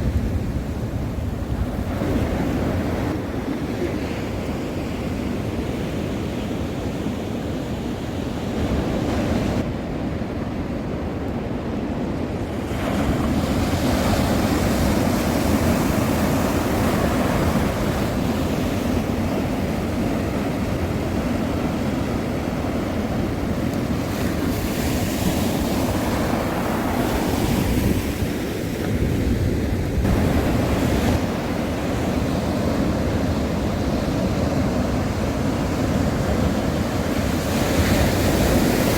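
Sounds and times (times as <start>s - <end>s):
waves breaking against coast: 0.0s - 38.9s
wind buffeting microphone: 0.0s - 38.9s.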